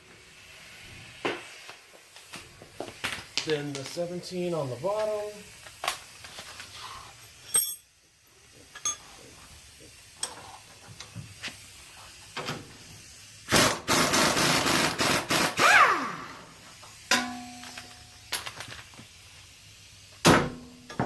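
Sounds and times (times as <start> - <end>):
impact wrench rapid hammering: 13.5 - 15.8.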